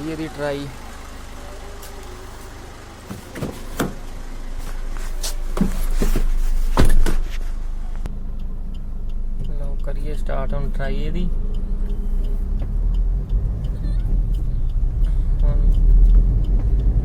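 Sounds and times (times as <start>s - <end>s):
diesel engine idling: 0.0s - 17.0s
loud thump: 5.6s - 7.3s.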